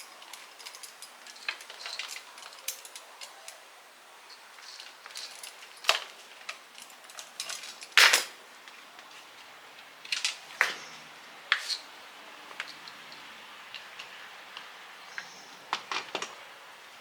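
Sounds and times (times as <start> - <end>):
metal parts clinking and knocking: 0.0 - 3.6, 4.4 - 8.4.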